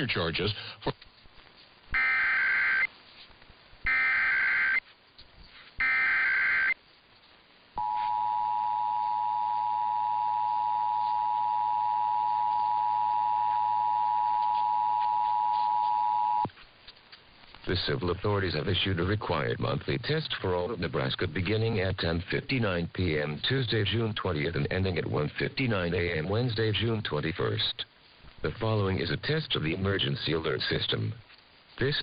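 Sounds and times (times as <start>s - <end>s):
digital data tone bursts: 2.0s - 2.9s, 3.9s - 4.8s, 5.8s - 6.8s
two-tone attention signal blare: 2.0s - 2.9s, 3.9s - 4.8s, 5.8s - 6.8s, 7.8s - 16.5s.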